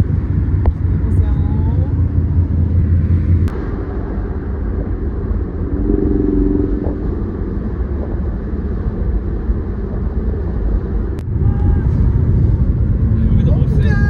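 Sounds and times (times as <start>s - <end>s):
brief low hum: 0.0s - 8.6s
vehicle rumble: 0.0s - 14.0s.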